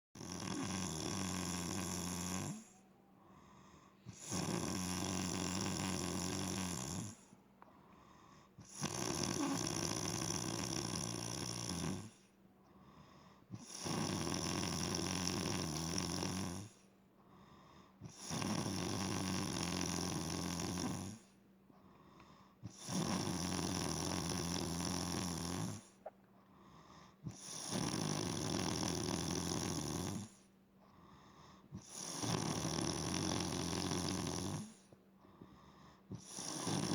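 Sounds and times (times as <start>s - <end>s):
woman snoring loudly: 0.2s - 2.8s, 4.1s - 7.3s, 8.6s - 12.2s, 13.5s - 16.8s, 18.0s - 21.3s, 22.7s - 26.0s, 27.3s - 30.4s, 31.8s - 34.8s, 36.1s - 36.9s.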